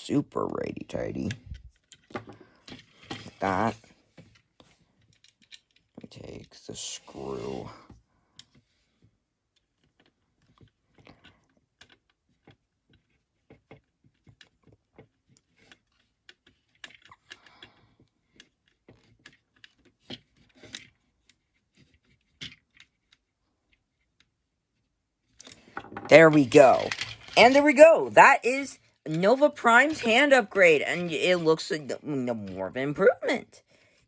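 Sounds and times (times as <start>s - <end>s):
plastic toy parts clicking: 1.1s - 3.4s, 4.4s - 6.1s, 9.5s - 24.3s, 25.3s - 28.1s.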